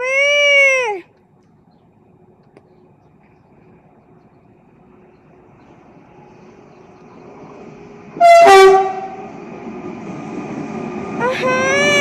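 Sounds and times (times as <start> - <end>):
train rumble: 0.0 - 12.0
locomotive horn blast: 8.2 - 9.3.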